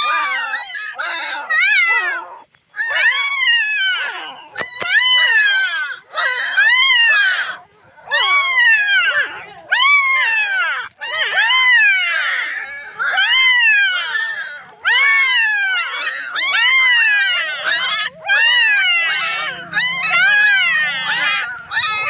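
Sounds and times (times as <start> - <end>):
puppies whining: 0.0 - 22.0.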